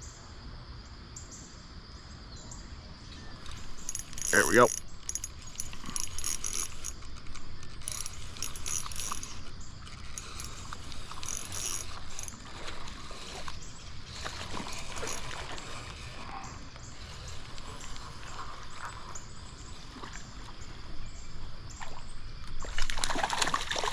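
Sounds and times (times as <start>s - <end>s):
stream water running: 3.3s - 23.9s
fishing reel ratchet clicking: 3.4s - 18.4s.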